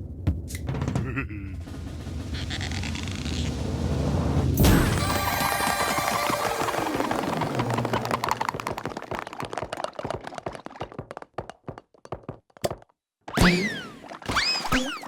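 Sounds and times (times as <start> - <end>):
cartoon clatter of rapid clicks: 4.9 - 11.8.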